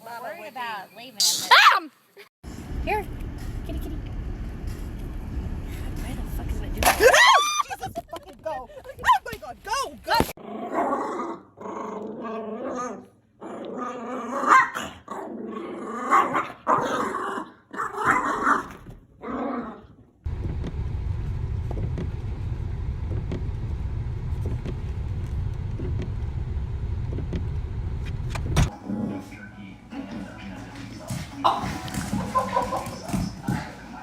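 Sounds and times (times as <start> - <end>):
steady low rumble: 2.4 - 7.1, 20.3 - 28.7
dog growling and barking: 10.4 - 20.0.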